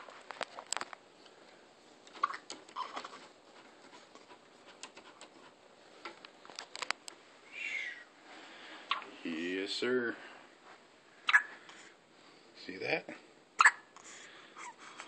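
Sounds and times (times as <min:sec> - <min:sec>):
baby hiccupping: 0:02.2 - 0:03.0, 0:11.3 - 0:11.6, 0:13.6 - 0:13.9.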